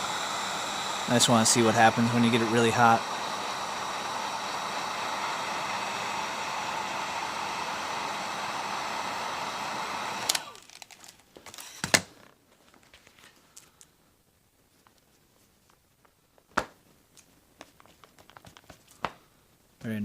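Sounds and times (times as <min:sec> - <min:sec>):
heat gun blowing: 0:00.0 - 0:12.3.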